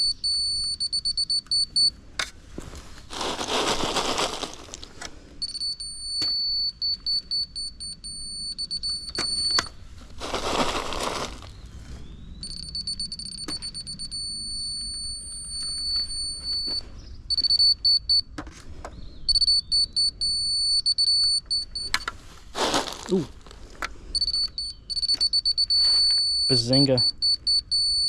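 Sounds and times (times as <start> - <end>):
electronic beeper high thin tone: 12.4 - 17.8, 24.2 - 28.0.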